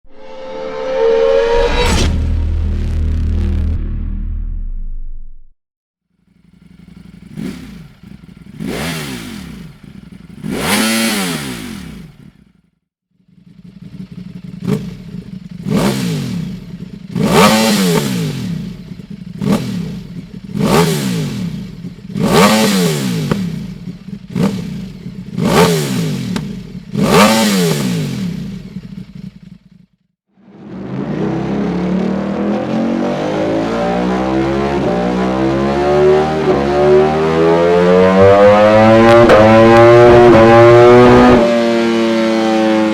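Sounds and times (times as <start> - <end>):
motorcycle engine throttle blips: 6.2 - 30.0.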